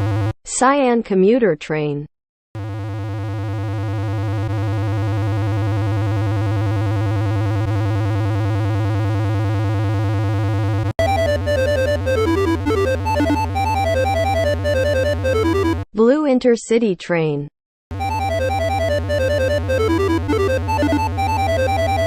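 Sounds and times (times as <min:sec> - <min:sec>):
bouncy synth melody: 0:11.0 - 0:15.8, 0:17.9 - 0:22.0
buzzy synth held tone: 0:11.0 - 0:15.8, 0:18.0 - 0:22.0.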